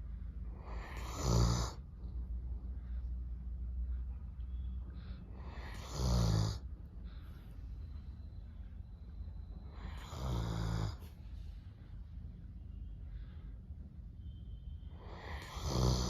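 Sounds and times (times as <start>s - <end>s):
dog snoring: 0.6s - 2.2s, 5.4s - 6.6s, 9.7s - 11.1s, 15.0s - 16.0s.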